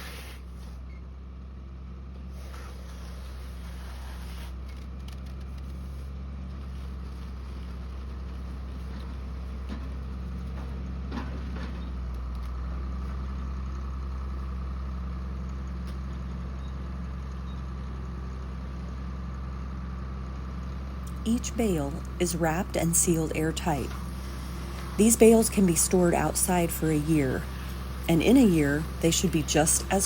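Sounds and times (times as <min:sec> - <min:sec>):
engine running: 0:00.0 - 0:30.0
high machine hum: 0:13.4 - 0:30.0.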